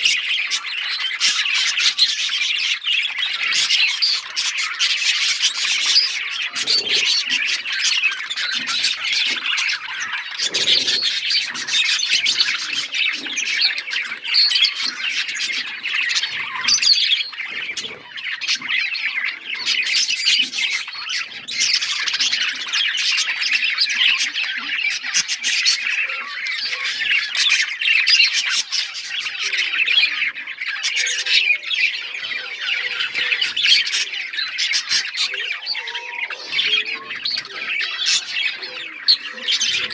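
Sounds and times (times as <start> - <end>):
budgies chattering and warbling: 0.0 - 39.9.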